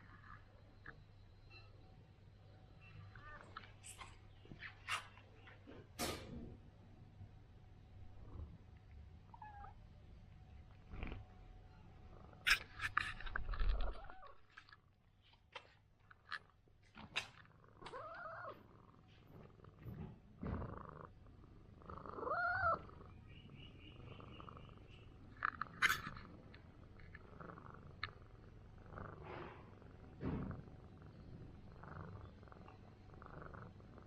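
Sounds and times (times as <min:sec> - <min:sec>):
cat purring: 0:00.0 - 0:01.2, 0:07.8 - 0:14.4, 0:17.1 - 0:34.0
cat meowing: 0:09.3 - 0:09.8.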